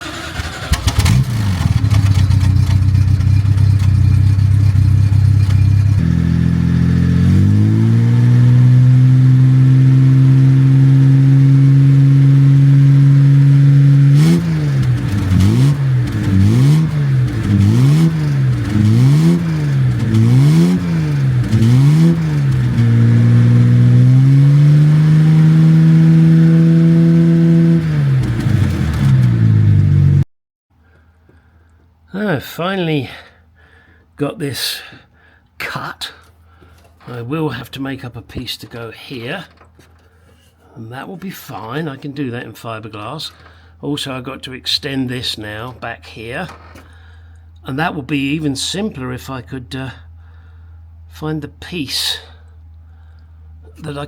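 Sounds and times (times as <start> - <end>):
car engine revving and idling: 0.0 - 30.2.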